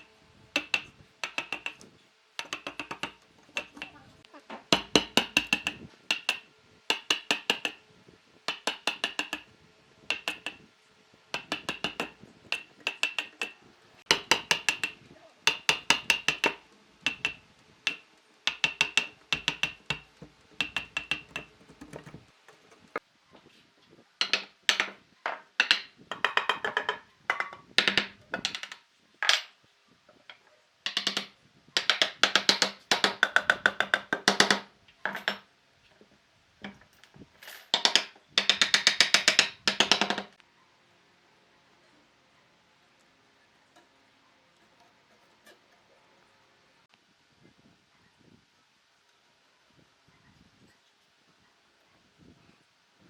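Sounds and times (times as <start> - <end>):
tool striking wood: 0.6 - 4.1, 4.7 - 7.8, 8.5 - 9.5, 10.1 - 10.7, 11.4 - 23.0.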